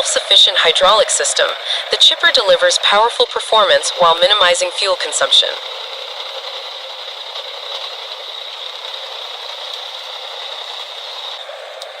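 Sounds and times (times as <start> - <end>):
machine noise with high whine: 0.0 - 12.0.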